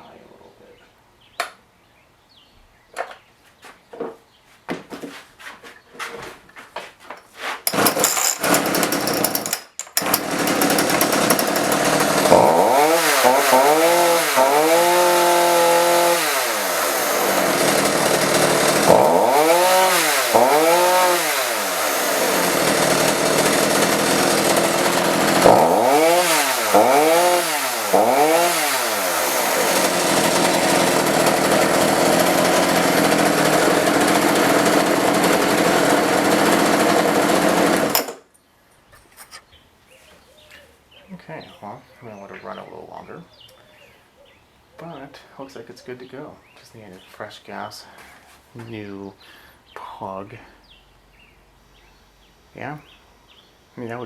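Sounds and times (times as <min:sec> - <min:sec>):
chainsaw revving: 0:07.7 - 0:38.2.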